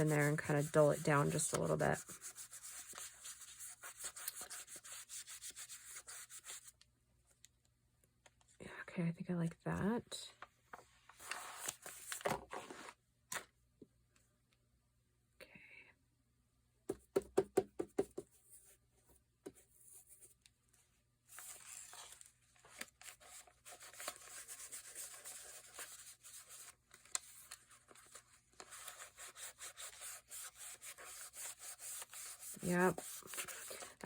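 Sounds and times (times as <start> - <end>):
scratchy rubbing on paper: 0.0 - 6.7, 23.7 - 26.7, 28.0 - 34.0.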